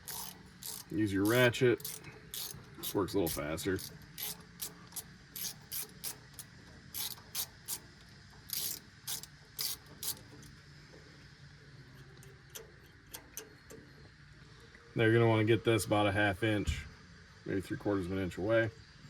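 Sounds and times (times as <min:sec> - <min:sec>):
socket ratchet clicking: 0:00.0 - 0:07.9, 0:08.5 - 0:10.4.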